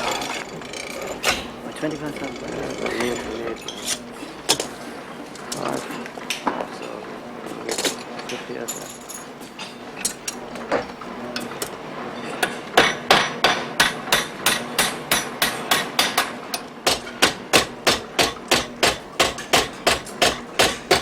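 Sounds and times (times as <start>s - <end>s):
hammer striking metal: 0.0s - 4.8s, 12.4s - 21.0s.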